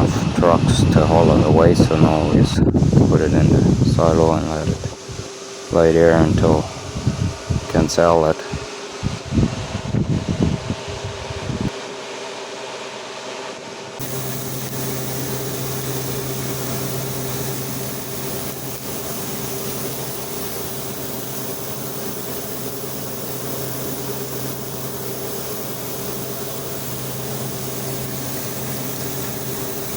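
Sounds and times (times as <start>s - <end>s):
grain machinery humming: 14.0s - 29.9s
steady low drone: 14.0s - 29.9s.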